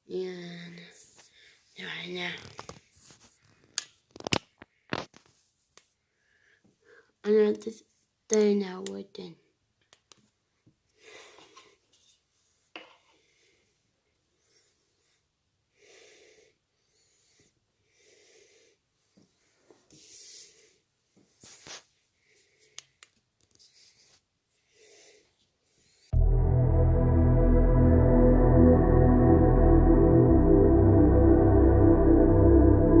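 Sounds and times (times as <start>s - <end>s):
soft breaths: 10.6s - 26.1s
ambient electronic music: 26.2s - 33.0s.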